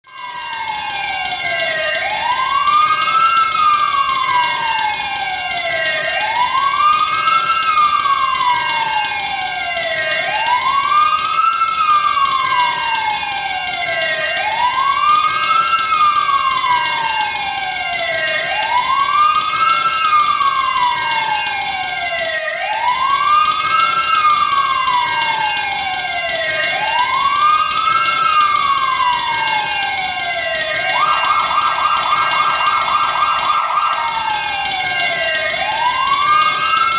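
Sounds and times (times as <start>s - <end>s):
fire alarm siren wailing: 0.0s - 36.9s
steady high tones: 30.4s - 36.8s.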